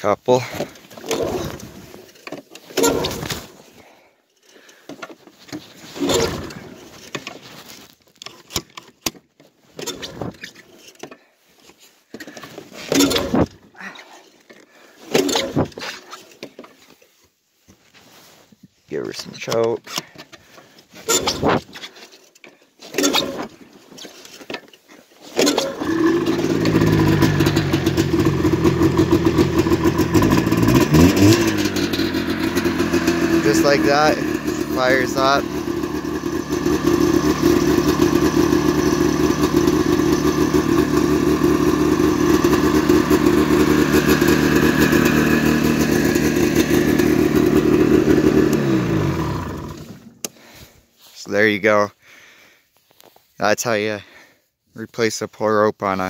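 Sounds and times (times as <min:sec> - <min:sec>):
engine cranking over: 0:00.4 - 0:01.8, 0:02.6 - 0:03.6, 0:05.9 - 0:07.2, 0:12.3 - 0:13.6, 0:15.1 - 0:15.8, 0:23.0 - 0:23.5, 0:25.4 - 0:50.4
recoil pull-starter yanked: 0:00.5 - 0:03.6, 0:04.7 - 0:07.4, 0:08.1 - 0:11.3, 0:12.1 - 0:13.6, 0:14.4 - 0:16.8, 0:19.4 - 0:50.4.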